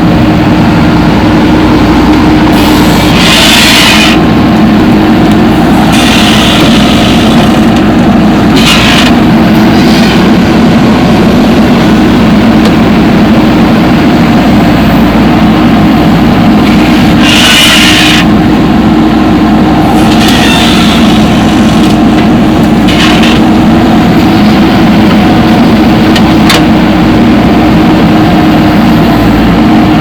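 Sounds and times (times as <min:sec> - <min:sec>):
heavy diesel engine running: 0:00.0 - 0:30.0.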